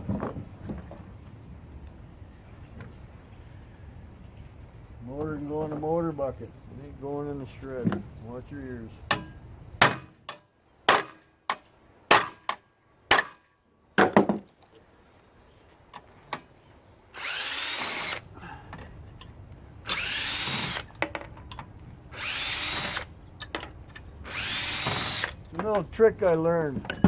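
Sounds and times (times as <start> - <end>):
power drill whining: 17.2 - 18.2, 19.9 - 20.9, 22.1 - 23.1, 24.2 - 25.4.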